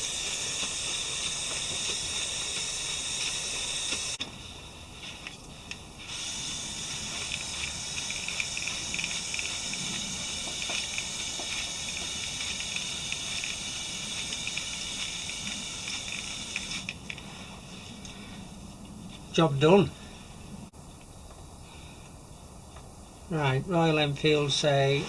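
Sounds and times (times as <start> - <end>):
aerosol spray hissing: 0.0 - 18.2.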